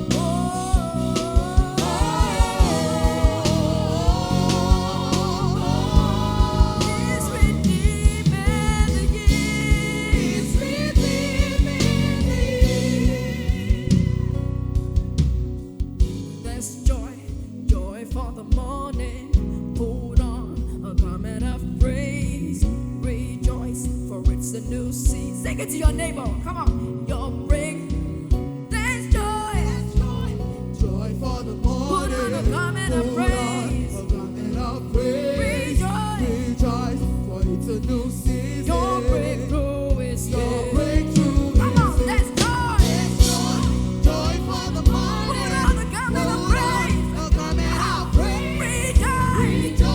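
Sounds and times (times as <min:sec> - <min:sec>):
person singing: 0:00.0 - 0:14.2, 0:29.6 - 0:49.9
worship band playing: 0:00.0 - 0:19.1, 0:25.3 - 0:49.9
steady drum beat: 0:00.0 - 0:26.9, 0:27.5 - 0:49.9.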